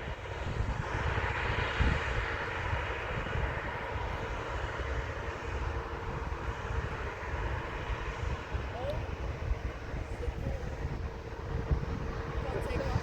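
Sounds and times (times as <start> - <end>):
jet engines running: 0.0 - 13.0.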